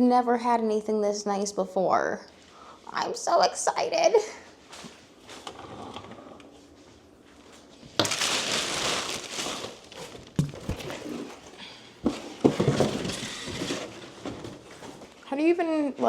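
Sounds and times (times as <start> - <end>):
plastic packaging crinkling: 7.8 - 11.6.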